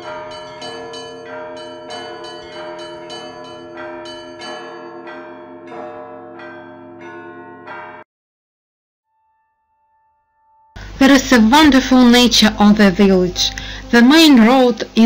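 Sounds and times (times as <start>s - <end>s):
church bells ringing: 0.0s - 8.0s.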